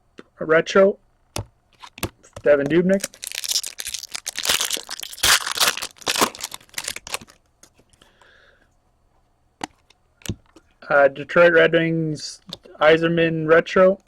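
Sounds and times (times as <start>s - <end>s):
wrapper tearing and crinkling: 2.9s - 7.4s.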